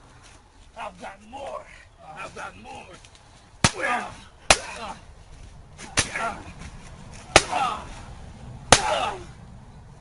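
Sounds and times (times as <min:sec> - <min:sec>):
sharp smacking strikes: 0:03.6 - 0:04.9, 0:05.8 - 0:07.8, 0:08.7 - 0:09.2.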